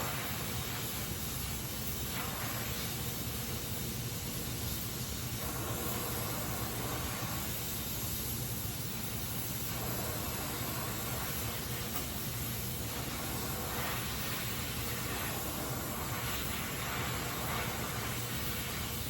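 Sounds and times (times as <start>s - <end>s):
welding torch flame hissing: 0.0s - 19.0s.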